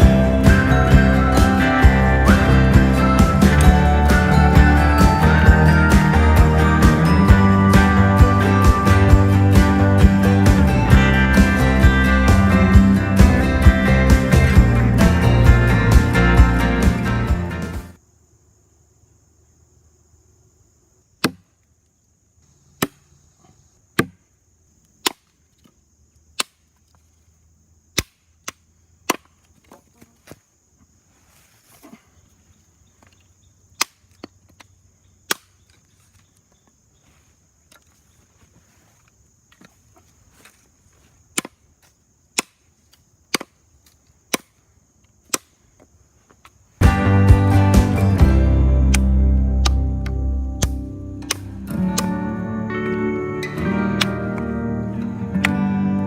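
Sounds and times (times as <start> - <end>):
acoustic guitar music: 0.0 - 18.0, 46.8 - 56.0
blade chopping into wood: 21.2 - 21.5, 22.8 - 23.0, 24.0 - 24.2, 25.0 - 25.7, 26.4 - 26.8, 28.0 - 30.4, 33.8 - 34.7, 35.3 - 35.7, 41.3 - 41.6, 42.4 - 42.6, 43.3 - 44.6, 45.3 - 45.6
chopping knocks on wood: 24.0 - 24.2.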